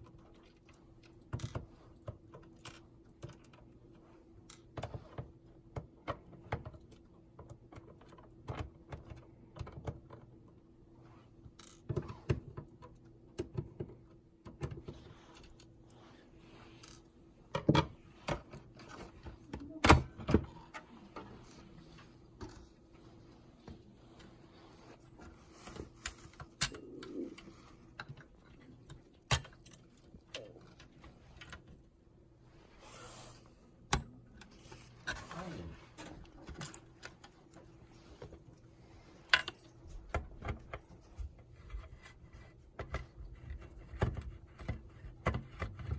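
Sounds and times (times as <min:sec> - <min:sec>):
clicks and taps of handling parts: 0:11.5 - 0:15.7, 0:39.2 - 0:45.9.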